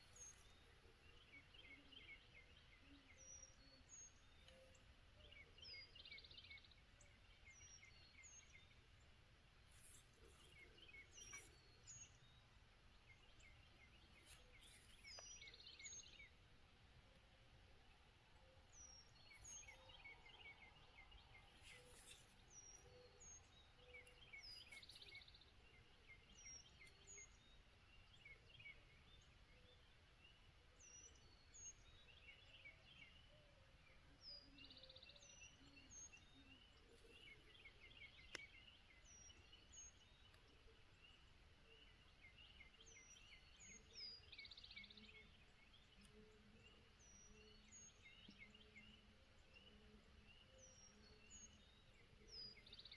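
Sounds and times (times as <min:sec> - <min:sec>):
faint songbirds chirping: 0:00.0 - 0:52.9.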